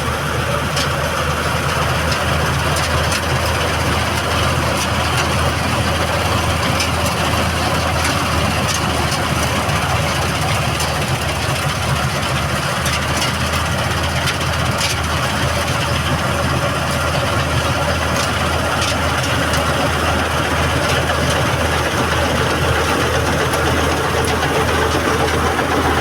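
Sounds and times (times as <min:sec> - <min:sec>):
diesel engine running: 0:00.0 - 0:26.0
light ticks and rattles: 0:02.0 - 0:26.0.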